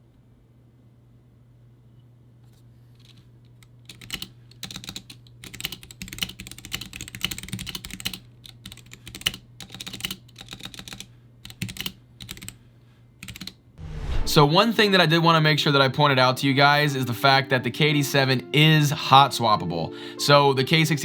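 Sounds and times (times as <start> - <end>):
mechanical keyboard key clacks: 3.9 - 12.5.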